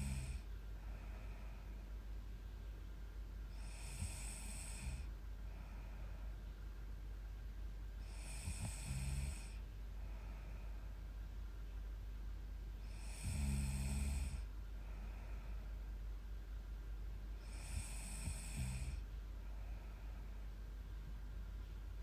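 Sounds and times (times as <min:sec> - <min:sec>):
woman snoring: 0:00.0 - 0:00.5, 0:03.5 - 0:05.1, 0:08.0 - 0:09.6, 0:12.8 - 0:14.5, 0:17.4 - 0:19.0
steady low hum: 0:00.0 - 0:22.0.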